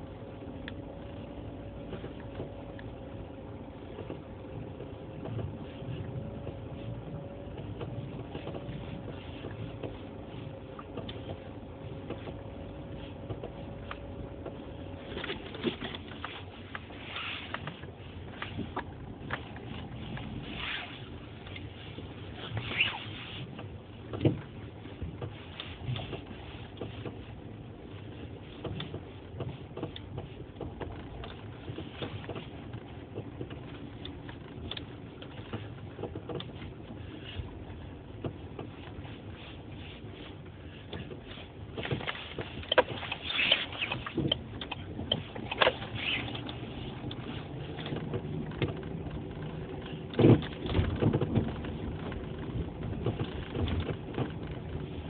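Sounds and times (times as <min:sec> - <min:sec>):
steady car noise: 0:00.0 - 0:55.0.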